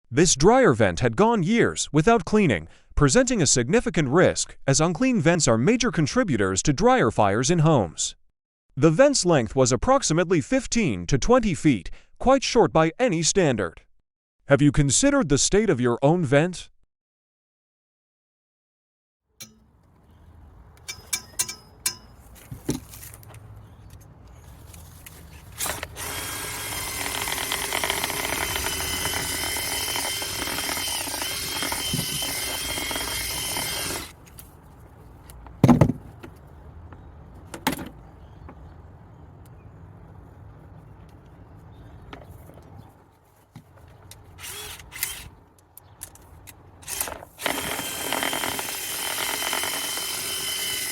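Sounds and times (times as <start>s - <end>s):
power drill whining: 25.6s - 34.2s, 44.4s - 45.3s, 46.8s - 50.9s.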